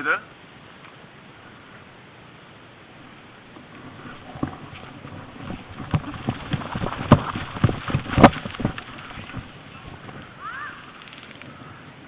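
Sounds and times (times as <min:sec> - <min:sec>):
irregular knocks and thuds: 0:03.5 - 0:10.4.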